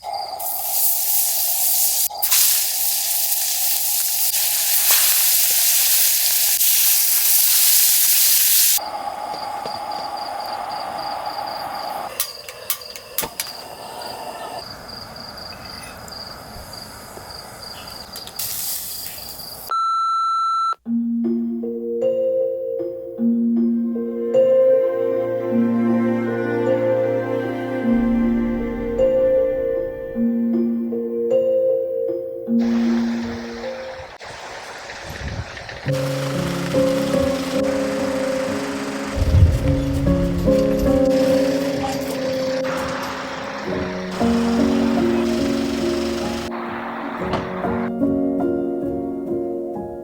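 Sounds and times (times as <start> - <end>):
loud steady hiss: 0.4 - 12.2, 16.2 - 19.7, 32.6 - 48.0
short beep: 19.7 - 20.8
soft music: 20.8 - 34.2, 35.9 - 50.0.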